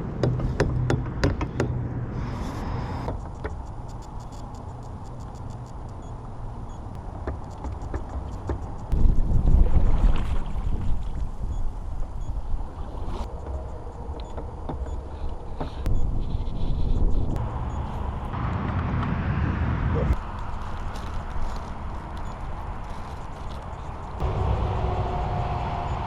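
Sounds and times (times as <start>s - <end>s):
light clicks and ticks: 3.2s - 9.0s
wind buffeting microphone: 8.8s - 14.7s.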